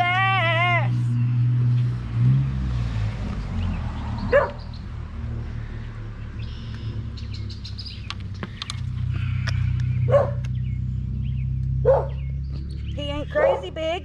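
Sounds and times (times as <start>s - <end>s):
steady low rumble: 0.0s - 14.0s
bird chirps: 3.5s - 4.9s, 6.2s - 13.4s
dog barking: 4.3s - 4.7s, 10.0s - 10.5s, 11.8s - 12.2s, 13.4s - 13.7s.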